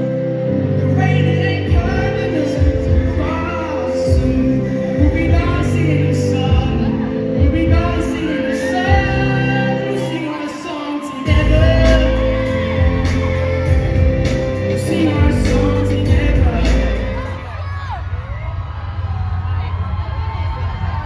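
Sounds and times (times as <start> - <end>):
heavy bass: 0.0 - 10.1, 11.3 - 21.0
person singing: 0.0 - 17.7
live pop band: 0.8 - 17.6.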